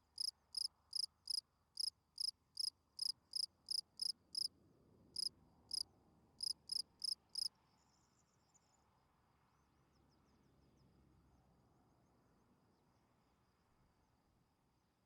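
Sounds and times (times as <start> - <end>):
field cricket chirping: 0.2 - 4.5, 5.2 - 5.8, 6.4 - 7.5.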